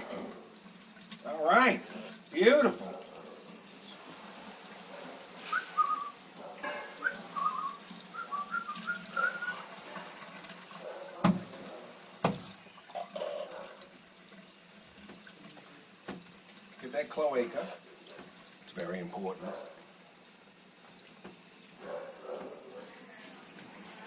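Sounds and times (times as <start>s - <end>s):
tap water running into sink: 0.0s - 24.0s
short wavering whistled notes: 5.5s - 6.1s, 7.0s - 9.6s.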